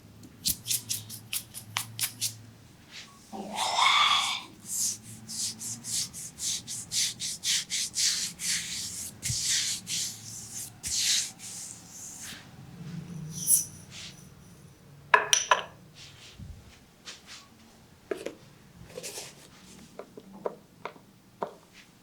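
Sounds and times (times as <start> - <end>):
hands rubbing oiled skin: 0.4 - 2.4, 4.6 - 12.4.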